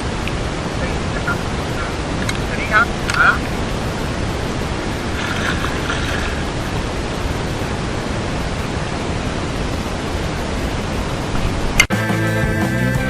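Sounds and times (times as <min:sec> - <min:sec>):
steady rushing outdoor noise: 0:00.0 - 0:13.0.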